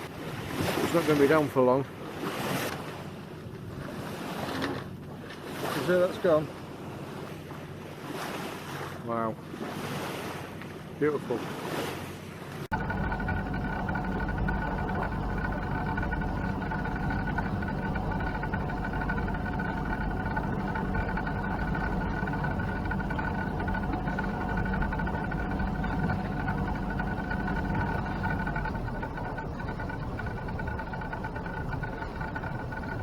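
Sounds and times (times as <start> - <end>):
diesel engine droning: 12.7 - 33.0
high whine: 12.7 - 33.0.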